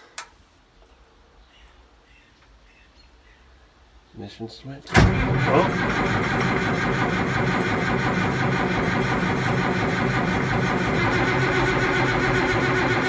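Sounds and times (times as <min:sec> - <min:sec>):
tractor engine cranking by starter: 0:04.8 - 0:13.0.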